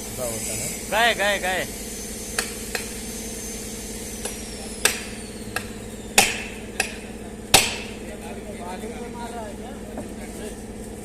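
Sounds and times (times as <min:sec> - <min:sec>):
steady hum: 0:00.0 - 0:11.0
hammer striking chisel on metal: 0:02.4 - 0:03.0, 0:04.2 - 0:08.0.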